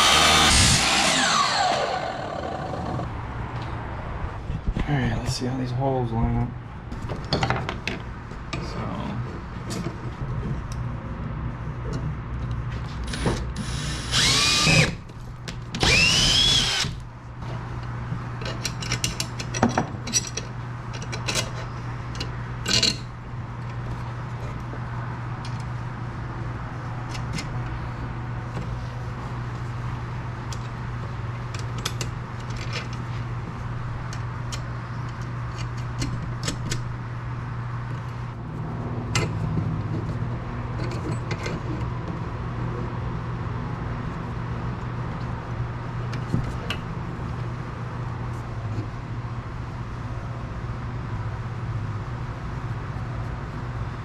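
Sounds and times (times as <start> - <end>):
power drill whine: 0.0 - 3.0, 13.1 - 15.0, 15.8 - 17.0
low hum: 0.0 - 4.3
clicks and knocks of tools: 17.8 - 23.0, 34.1 - 36.8, 40.8 - 42.2.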